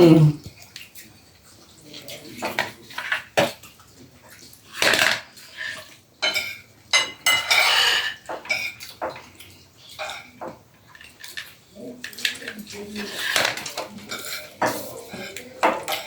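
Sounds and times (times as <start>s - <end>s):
spoons clinking on plates: 4.4s - 16.0s.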